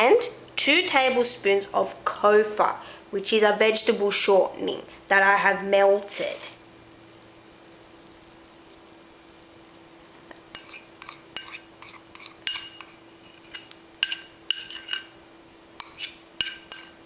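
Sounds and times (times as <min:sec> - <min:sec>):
spoon clinking against bowl: 0:10.6 - 0:15.1, 0:15.8 - 0:17.0.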